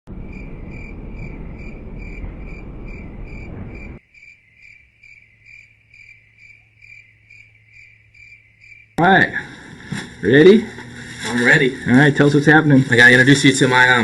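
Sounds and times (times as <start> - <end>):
loud low rumbling: 0.1 - 4.0.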